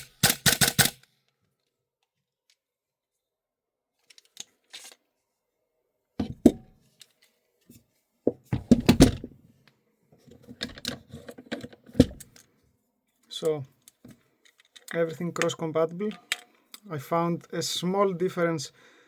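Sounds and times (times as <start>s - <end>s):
airsoft rifle clicks and clacks: 0.0s - 1.3s.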